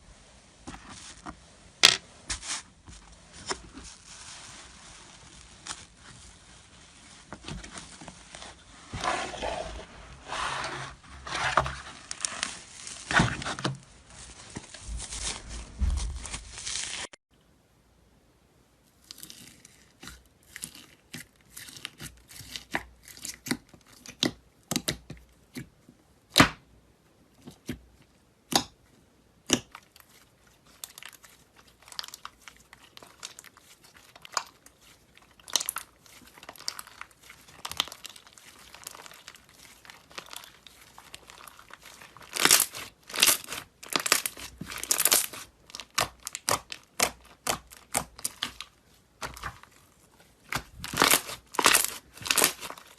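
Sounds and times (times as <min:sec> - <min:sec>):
slime squishing with crackling pops: 0:27.4 - 0:52.9.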